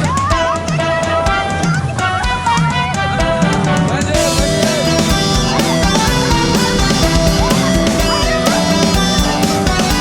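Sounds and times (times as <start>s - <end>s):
drums: 0.0s - 10.0s
guitar: 0.0s - 10.0s.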